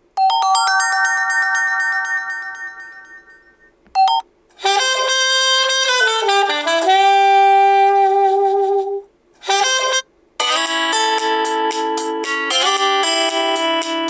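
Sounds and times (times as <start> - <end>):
ringtone chime chord: 0.2 - 4.2, 10.4 - 14.0
ringtone melody: 0.2 - 5.2, 9.7 - 14.0.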